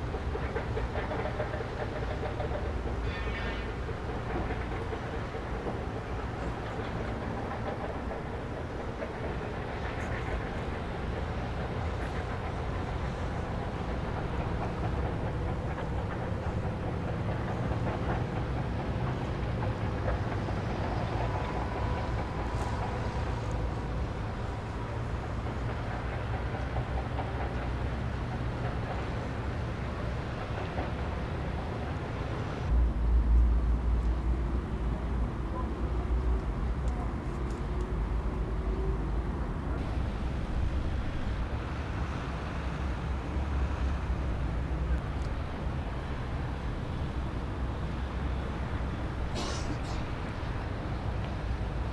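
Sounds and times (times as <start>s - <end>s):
city background rumble: 0.0s - 51.9s
low mechanical rumble: 32.6s - 41.6s.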